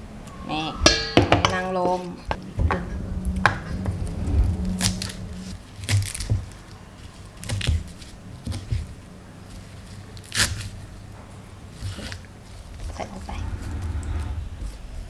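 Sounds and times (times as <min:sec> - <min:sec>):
faint low hum: 0:00.0 - 0:15.0
sharp tearing noises: 0:09.5 - 0:11.0.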